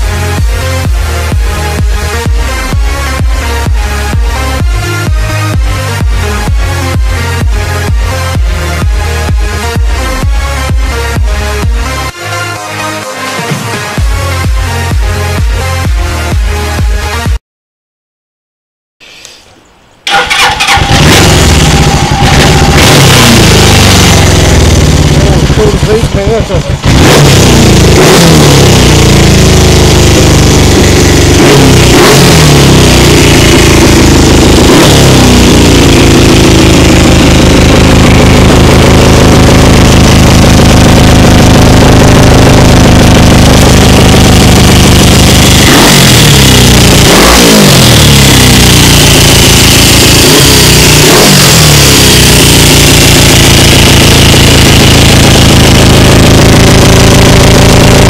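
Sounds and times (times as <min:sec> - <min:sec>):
motorcycle engine revving: 0:20.0 - 0:58.0.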